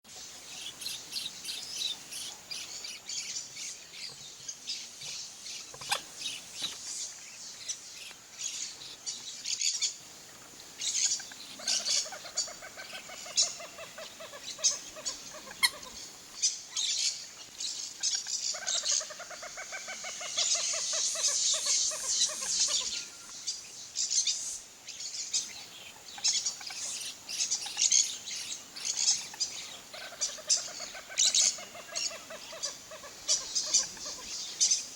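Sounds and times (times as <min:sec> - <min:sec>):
birds chirping: 0:00.1 - 0:34.9
bird cackling: 0:05.6 - 0:06.8, 0:10.8 - 0:16.9, 0:18.0 - 0:23.5, 0:25.5 - 0:34.9.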